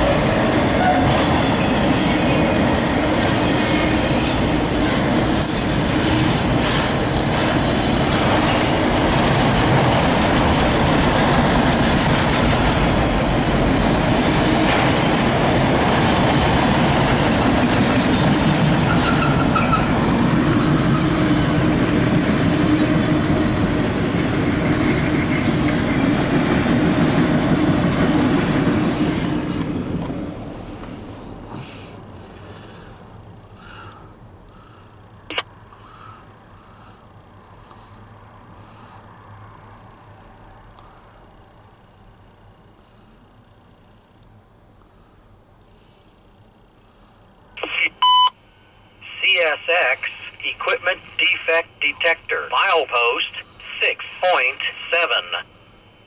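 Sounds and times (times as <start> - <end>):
freight train wheels clattering: 0.0 - 30.2
train wheel squeal: 18.9 - 20.0.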